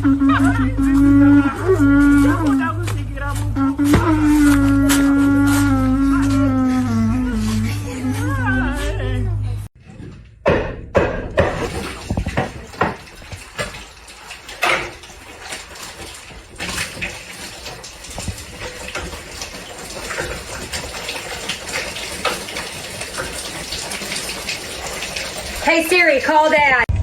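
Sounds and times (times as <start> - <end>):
running water: 11.6 - 26.9.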